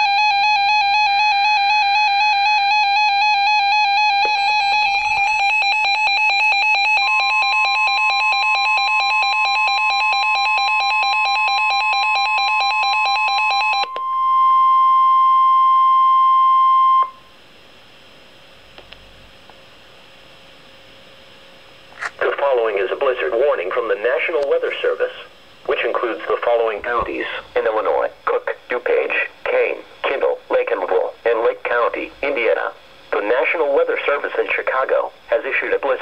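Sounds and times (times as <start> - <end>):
warbling electronic alarm: 0.0 - 17.3
steady warning tone: 0.0 - 17.6.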